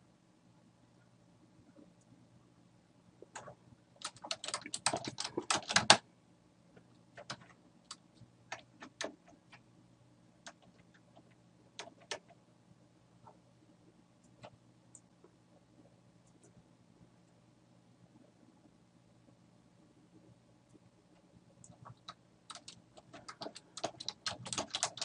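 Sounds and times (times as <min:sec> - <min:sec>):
keyboard typing: 0:03.3 - 0:06.0, 0:07.1 - 0:09.6, 0:10.4 - 0:12.4, 0:21.6 - 0:25.0.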